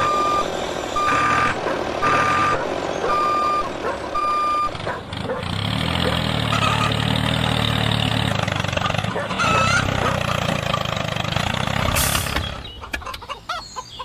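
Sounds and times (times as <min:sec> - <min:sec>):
reversing alarm beeping: 0:00.0 - 0:04.8.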